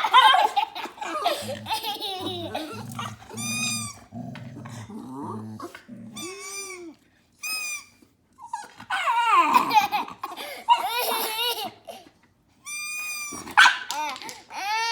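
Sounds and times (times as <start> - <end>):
small dog whining and squealing: 2.5 - 4.1, 6.1 - 9.7, 12.6 - 14.9.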